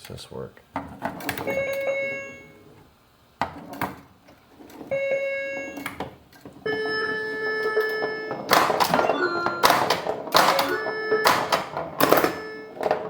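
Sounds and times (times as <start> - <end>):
pinball electronic tones: 1.2 - 2.8, 4.6 - 13.0
pinball ball clacks: 4.6 - 13.0.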